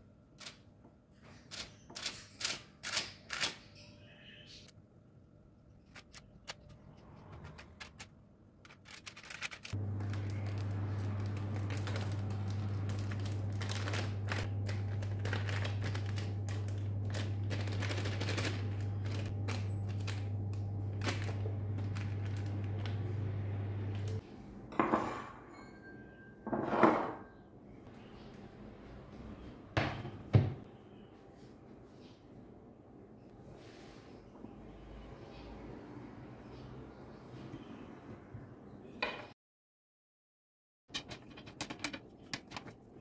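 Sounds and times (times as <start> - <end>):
low hum: 9.7 - 24.6.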